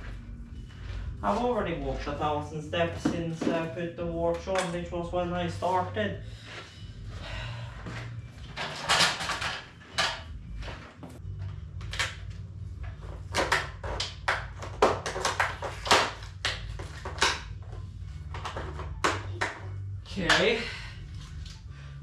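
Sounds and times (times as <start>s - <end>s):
low steady hum: 0.0s - 22.0s
objects knocking and clattering: 8.1s - 20.6s.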